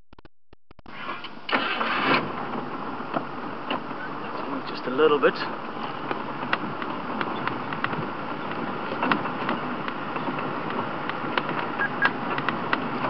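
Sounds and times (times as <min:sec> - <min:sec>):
vehicle engine and road noise: 0:00.9 - 0:13.0
short knocks and rattles: 0:06.0 - 0:13.0.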